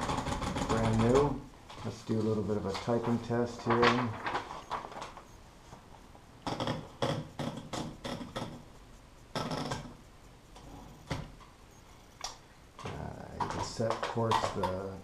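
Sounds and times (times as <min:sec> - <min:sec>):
typewriter keystrokes: 0:00.0 - 0:01.4.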